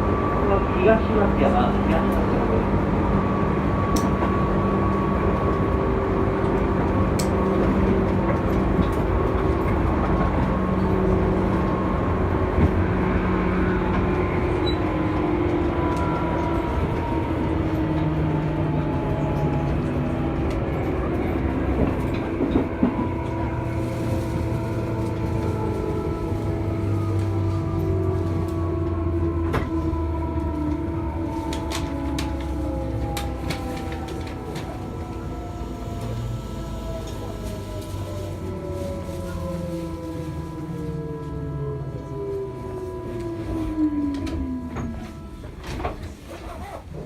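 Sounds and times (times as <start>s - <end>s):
train motor whine: 3.2s - 39.1s.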